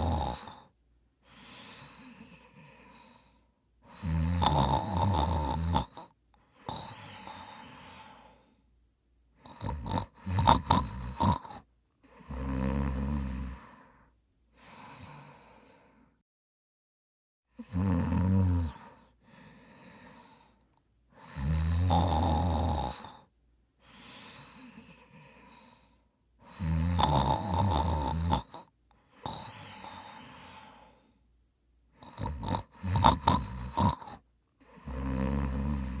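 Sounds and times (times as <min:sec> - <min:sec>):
person snoring loudly: 0:00.0 - 0:00.7, 0:03.9 - 0:08.3, 0:09.4 - 0:13.8, 0:17.6 - 0:19.0, 0:21.2 - 0:23.3, 0:26.4 - 0:31.0, 0:32.0 - 0:36.0
quiet breath: 0:00.0 - 0:04.1, 0:05.9 - 0:10.3, 0:13.2 - 0:16.2, 0:18.7 - 0:21.5, 0:22.9 - 0:26.8, 0:28.4 - 0:33.1.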